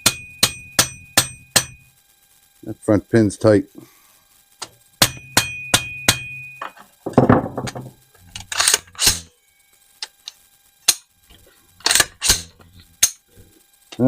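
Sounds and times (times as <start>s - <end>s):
rifle parts clicking and clacking: 7.6s - 9.3s, 11.8s - 13.2s.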